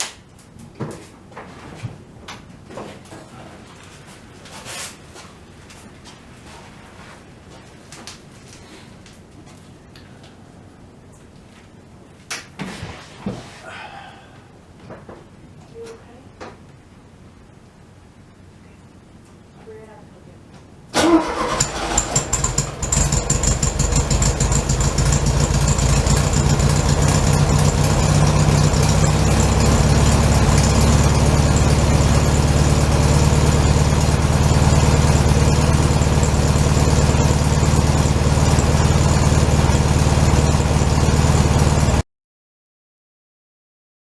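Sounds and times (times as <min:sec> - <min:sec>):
car engine idling: 0:21.0 - 0:42.0.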